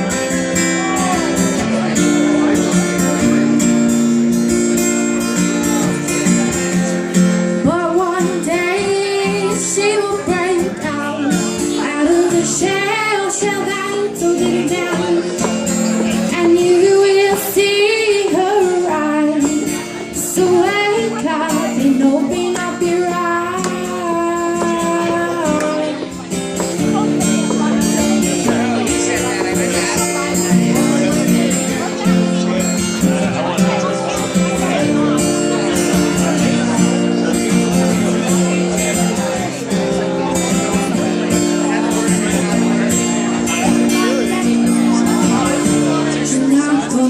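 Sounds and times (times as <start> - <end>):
guitar accompaniment: 0.0 - 47.0
woman singing: 7.6 - 15.5, 16.3 - 26.2, 46.2 - 47.0.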